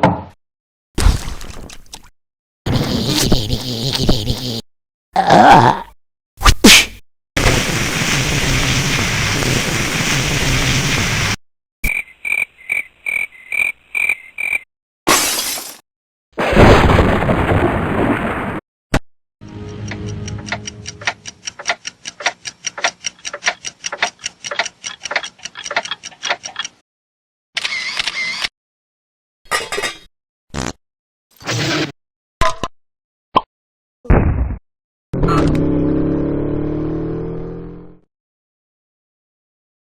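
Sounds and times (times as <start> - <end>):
rapid ticking: 19.8 - 26.8.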